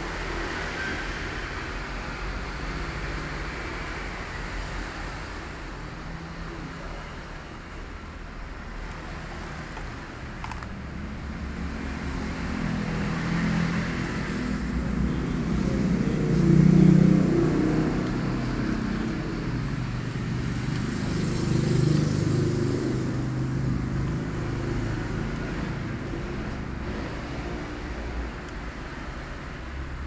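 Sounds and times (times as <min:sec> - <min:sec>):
vehicle engines passing: 0:00.0 - 0:30.0.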